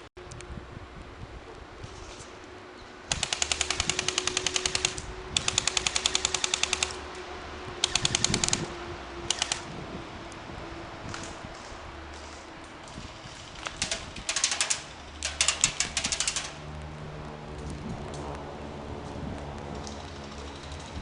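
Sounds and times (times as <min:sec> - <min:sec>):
airsoft gun firing bursts: 0:03.1 - 0:07.0, 0:07.8 - 0:08.7, 0:13.0 - 0:16.6.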